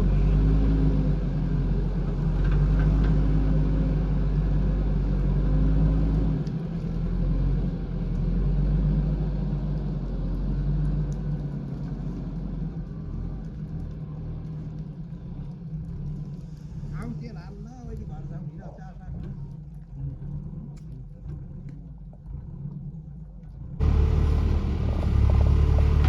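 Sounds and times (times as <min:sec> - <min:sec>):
diesel engine rumbling under load: 0:00.0 - 0:14.6, 0:23.8 - 0:26.0.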